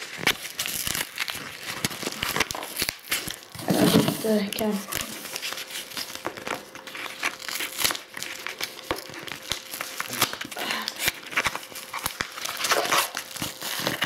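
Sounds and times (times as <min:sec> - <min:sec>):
package crinkling and crackling: 0:00.0 - 0:14.0
package paper ripping: 0:00.0 - 0:14.0.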